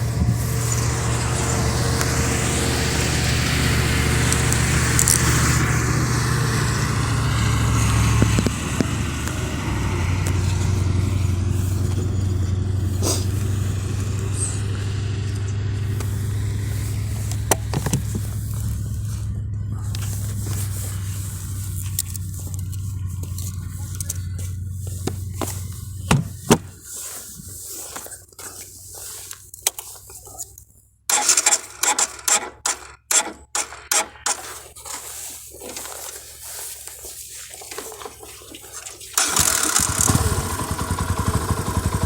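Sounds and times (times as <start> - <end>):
motorcycle engine running: 0.0 - 28.0, 39.2 - 42.0
wind and road hiss: 0.0 - 30.2, 34.4 - 42.0
sharp knocks: 26.1 - 26.7.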